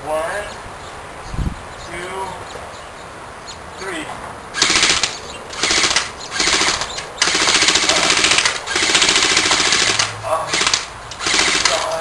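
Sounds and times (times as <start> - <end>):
airsoft guns firing full-auto: 4.6 - 12.0.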